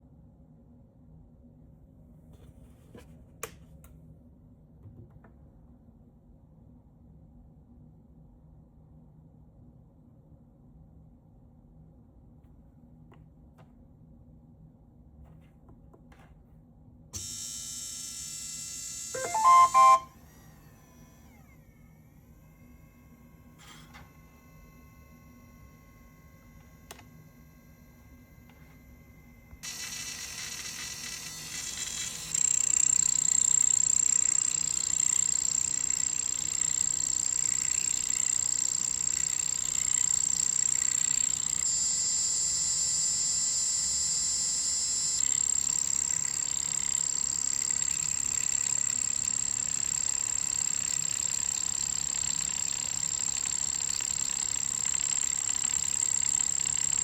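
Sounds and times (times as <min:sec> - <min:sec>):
printer high-pitched whine: 0:17.2 - 0:21.4, 0:22.6 - 0:57.0.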